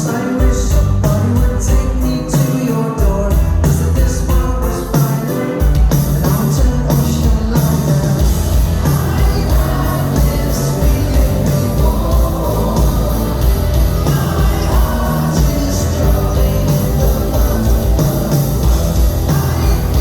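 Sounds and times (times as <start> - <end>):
lead vocal singing: 0.0 - 20.0
live pop-rock band: 0.0 - 20.0.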